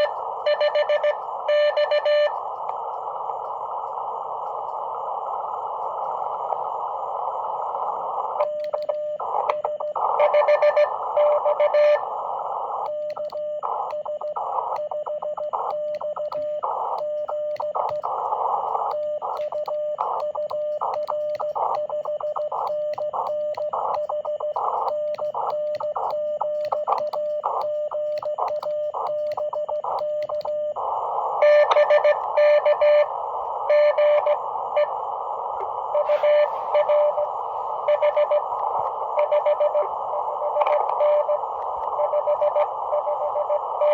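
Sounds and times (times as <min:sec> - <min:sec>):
radio band noise hiss: 0:00.0 - 0:43.9
morse code tone: 0:36.0 - 0:37.2.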